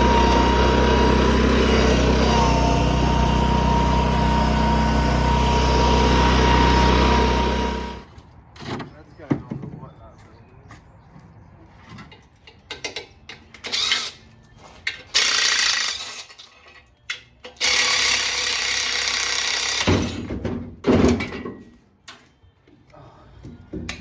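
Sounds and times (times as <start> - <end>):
power tool hissing: 0.0 - 8.0.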